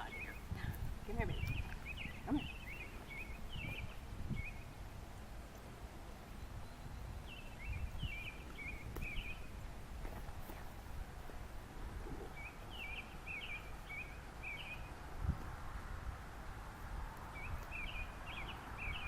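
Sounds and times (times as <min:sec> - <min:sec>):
small bird chirping: 0:00.0 - 0:04.8, 0:06.3 - 0:09.6
steady low rumble: 0:00.0 - 0:19.0.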